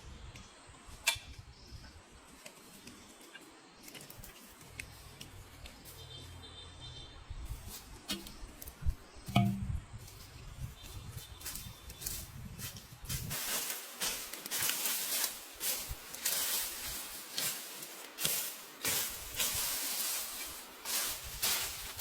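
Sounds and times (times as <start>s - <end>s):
rough scraping strokes: 13.2s - 22.0s.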